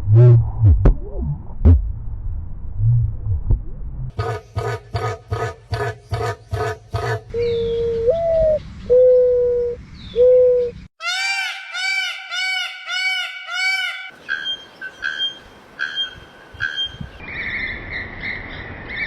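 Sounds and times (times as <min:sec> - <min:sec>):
high-pitched bird call: 0:05.8 - 0:18.4.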